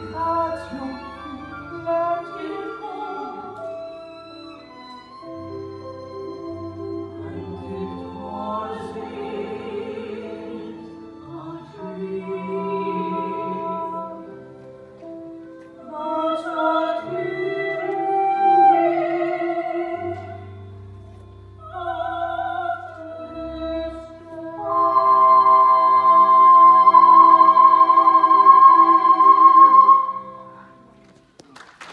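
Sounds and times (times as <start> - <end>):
operatic singing: 0.0 - 3.9, 6.3 - 14.4, 21.6 - 30.9
orchestral accompaniment: 0.0 - 31.1.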